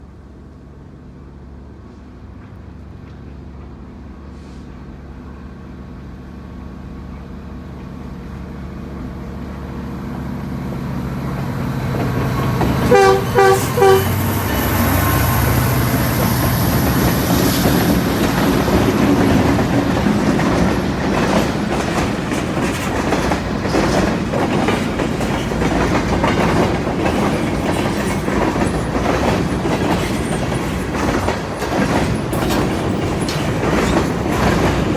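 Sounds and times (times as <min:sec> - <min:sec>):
diesel train engines: 0:00.0 - 0:34.9
railcars clickety-clack: 0:00.1 - 0:34.9
locomotive horn blasts: 0:12.8 - 0:15.5.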